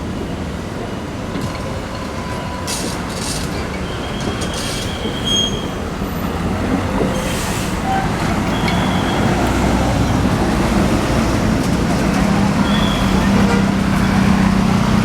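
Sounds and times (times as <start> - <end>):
bus engine rumble: 0.0 - 15.0
road noise: 0.0 - 15.0
high squeals: 12.6 - 13.3.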